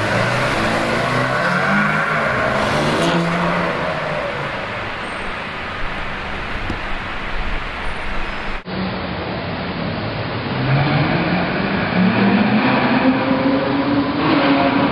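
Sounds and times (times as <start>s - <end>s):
car engine accelerating: 0.0s - 8.6s
street traffic: 0.0s - 14.9s.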